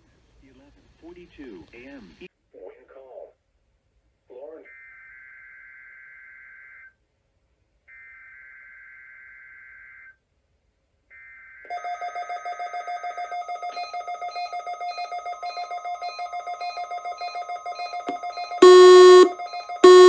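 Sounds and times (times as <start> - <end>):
steady pulsing alert tone: 13.2 - 20.0
raspy two-tone data bursts: 17.9 - 20.0.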